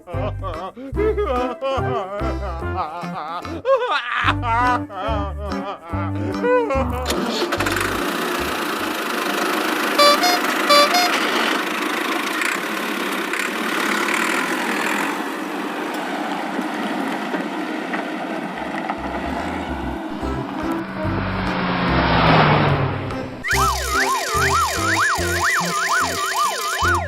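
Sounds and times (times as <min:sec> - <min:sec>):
vehicle engine running: 0:07.0 - 0:15.3, 0:18.5 - 0:27.0
short horn beeps: 0:10.0 - 0:11.4.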